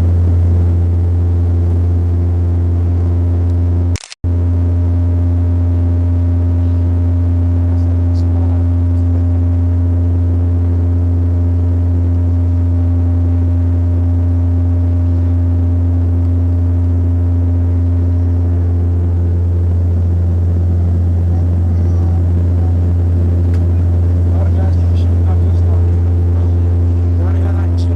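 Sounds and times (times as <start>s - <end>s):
faint steady tones: 0.0s - 3.9s, 14.8s - 27.9s
deep propeller hum in cabin: 0.0s - 27.9s.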